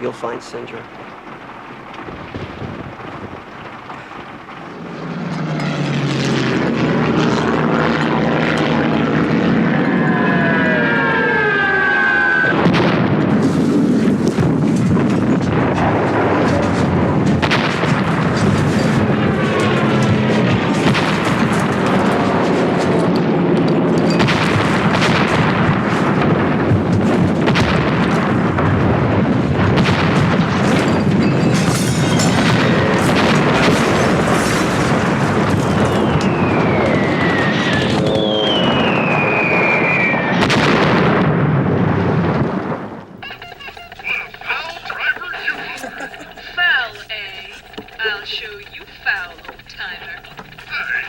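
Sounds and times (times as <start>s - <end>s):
booming explosions: 0.0s - 51.0s
continuous rumble: 0.0s - 51.0s
gunfire: 12.5s - 43.0s
falling whistling tones: 35.7s - 40.4s.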